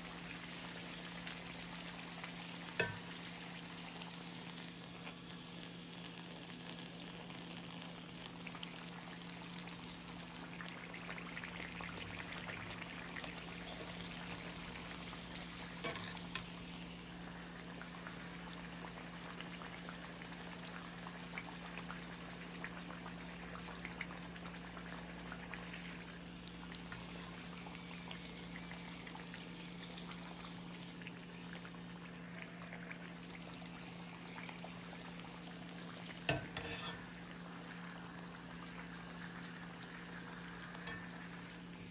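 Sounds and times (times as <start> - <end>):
food sizzling in a frying pan: 0.0 - 41.9
utensil clicking against pan: 2.8 - 3.0.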